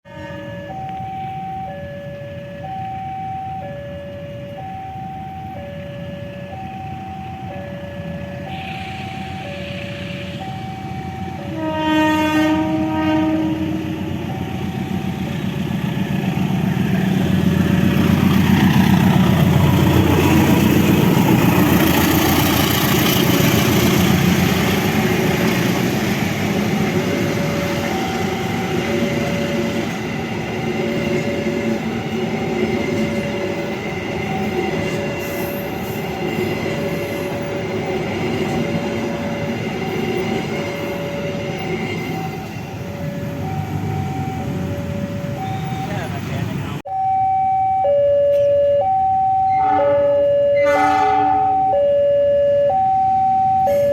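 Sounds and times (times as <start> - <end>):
train horn: 0.0 - 0.8, 11.4 - 14.3, 49.4 - 51.7
train passing with wheel clatter: 0.0 - 46.9, 48.3 - 53.9.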